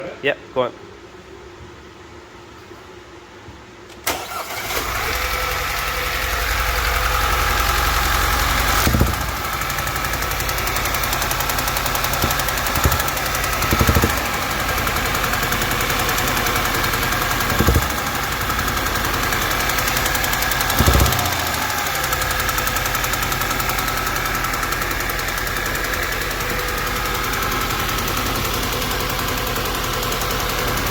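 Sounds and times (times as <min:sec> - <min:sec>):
car engine starting and idling: 0:04.0 - 0:30.9
fast even ticking: 0:08.8 - 0:21.7.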